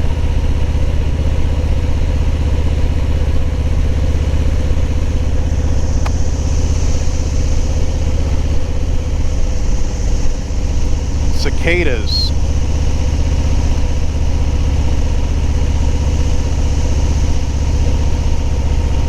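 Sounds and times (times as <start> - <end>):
motorcycle engine running: 0.0 - 19.0
cicadas droning: 5.4 - 18.7.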